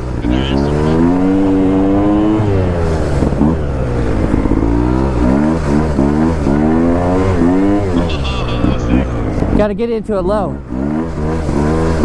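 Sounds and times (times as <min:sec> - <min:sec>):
pit bike engine revving: 0:00.0 - 0:12.0.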